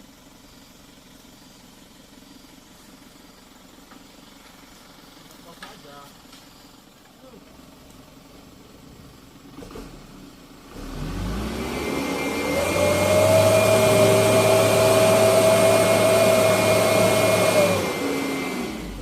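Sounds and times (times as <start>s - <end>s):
truck engine revving: 9.0s - 19.0s.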